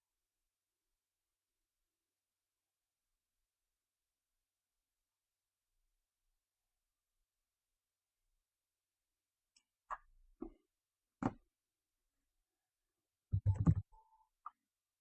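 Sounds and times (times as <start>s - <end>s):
sharp clicks and knocks: 13.4s - 13.9s.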